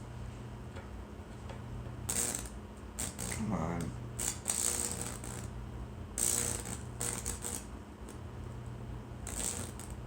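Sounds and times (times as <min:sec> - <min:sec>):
electrical arcing crackling: 0:02.1 - 0:05.6, 0:06.2 - 0:08.2, 0:09.2 - 0:10.0.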